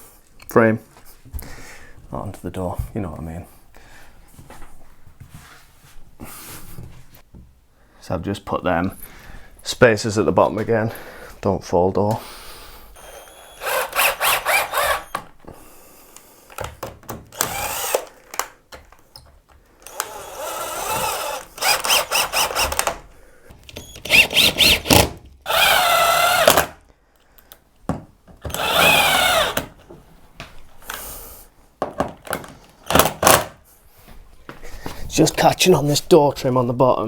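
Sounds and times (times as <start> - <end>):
power drill driving screws into wood: 13.0 - 15.4, 16.5 - 18.5, 19.8 - 23.1, 23.7 - 26.8, 28.4 - 29.8, 32.8 - 33.6.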